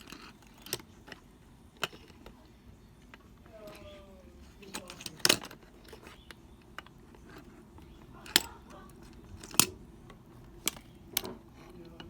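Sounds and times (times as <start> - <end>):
plastic pieces clicking: 0.0 - 12.0.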